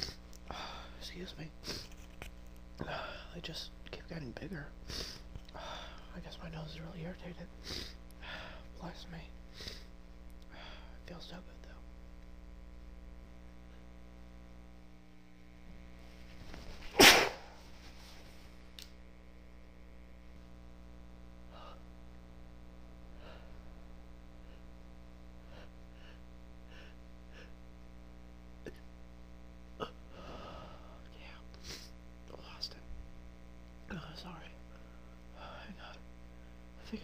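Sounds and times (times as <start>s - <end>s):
low electrical hum: 0.0s - 37.0s
woman sneezing: 16.9s - 17.6s
intake of breath: 30.1s - 31.0s.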